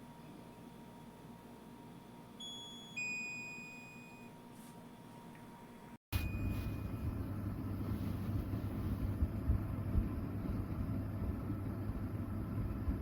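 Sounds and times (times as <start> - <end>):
dehydrator fan running: 4.8 - 13.0.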